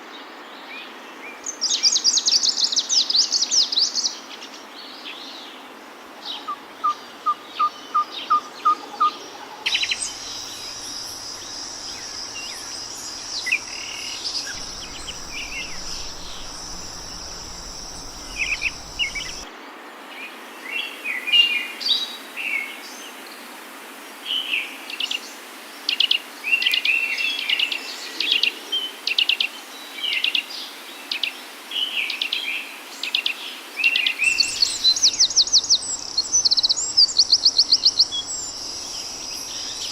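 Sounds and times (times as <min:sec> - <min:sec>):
birds singing and chirping: 0:09.7 - 0:19.5, 0:34.3 - 0:39.9
steady high buzz: 0:09.7 - 0:19.5, 0:34.4 - 0:39.9.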